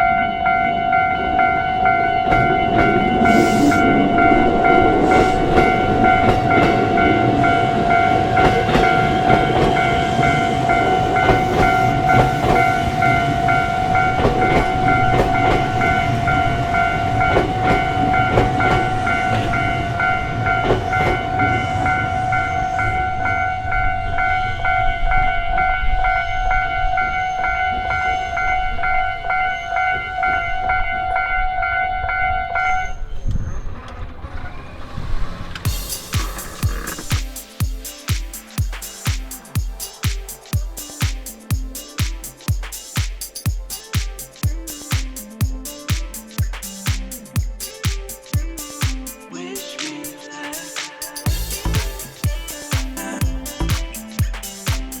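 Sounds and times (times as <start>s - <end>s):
level crossing warning bell: 0.0s - 33.9s
train wheels clicking over rail joints: 2.2s - 22.6s, 33.2s - 45.9s.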